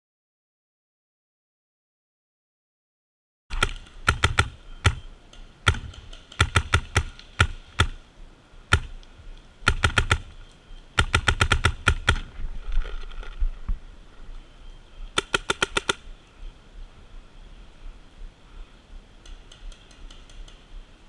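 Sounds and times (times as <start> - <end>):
paintball markers firing: 3.5 - 8.0, 8.7 - 9.0, 9.6 - 10.4, 11.0 - 12.3, 15.2 - 16.0, 19.2 - 20.6.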